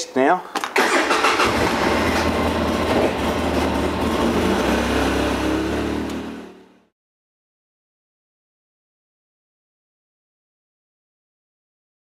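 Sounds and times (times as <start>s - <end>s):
utility vehicle engine running: 0.9s - 6.9s.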